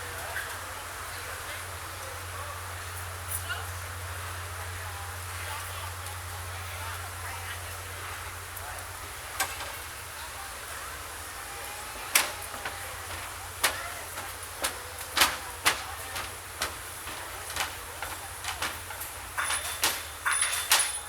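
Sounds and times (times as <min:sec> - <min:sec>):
busy outdoor background hum: 0:00.0 - 0:21.0
sharp clicks or knocks: 0:12.1 - 0:21.0.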